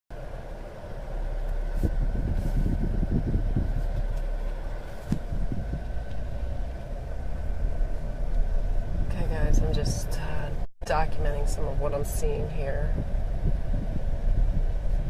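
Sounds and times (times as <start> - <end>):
car engine and road rumble: 0.1 - 15.0.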